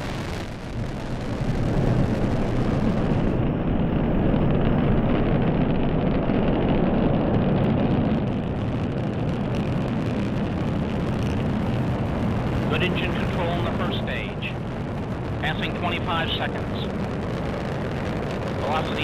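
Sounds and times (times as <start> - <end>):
rocket engine roar: 0.0 - 19.0.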